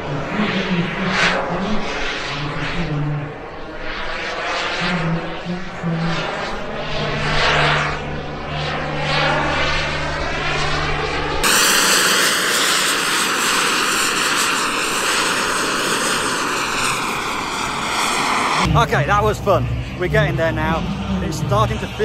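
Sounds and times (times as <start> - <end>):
model jet engine flying past: 0.0 - 22.0
hissy steady rush: 11.4 - 22.0.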